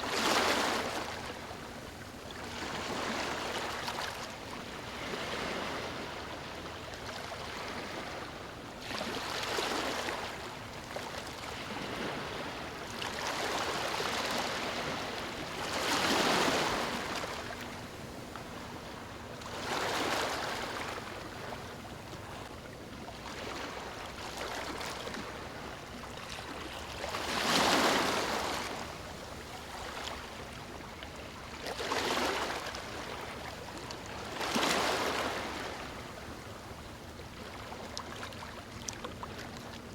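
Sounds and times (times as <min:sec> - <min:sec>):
ocean waves breaking on beach: 0:11.5 - 0:17.8, 0:26.5 - 0:30.0.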